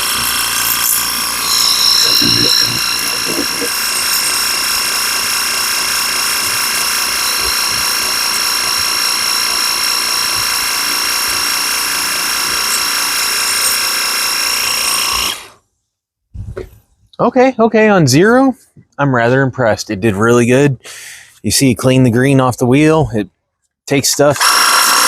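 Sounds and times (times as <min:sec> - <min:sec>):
water jet hissing: 0:00.0 - 0:05.7
pressure washer pump whine: 0:00.0 - 0:15.6, 0:24.4 - 0:25.0.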